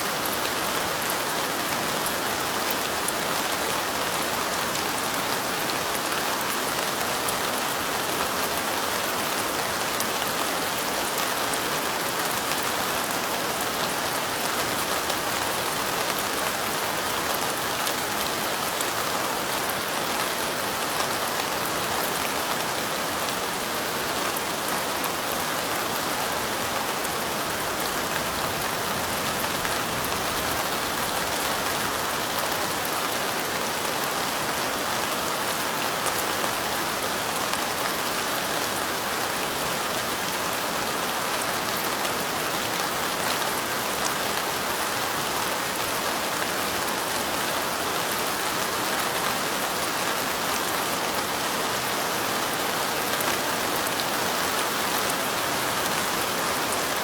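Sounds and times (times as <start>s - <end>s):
light rain falling: 0.0s - 57.0s.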